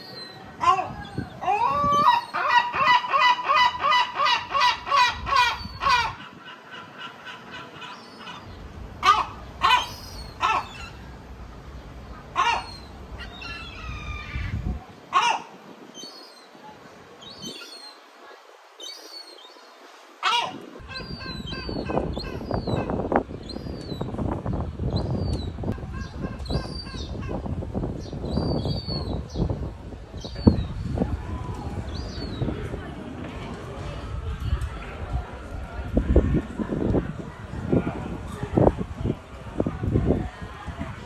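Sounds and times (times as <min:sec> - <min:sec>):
gull calling: 0:00.2 - 0:11.1, 0:12.3 - 0:14.6, 0:20.2 - 0:23.0.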